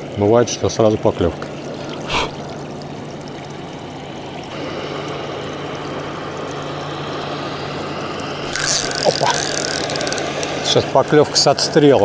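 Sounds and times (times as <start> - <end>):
constant low hum: 0.0 - 12.0
water-like hiss: 1.8 - 2.5, 4.5 - 11.9.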